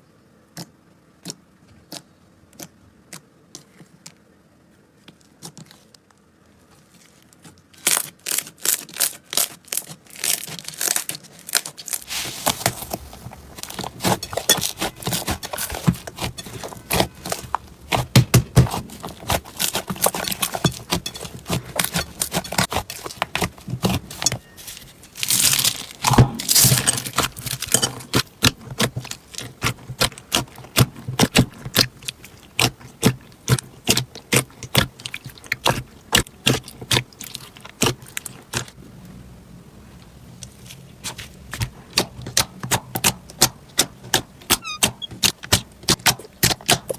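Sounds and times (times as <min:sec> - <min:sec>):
slime crackling and popping: 0:07.7 - 0:38.8.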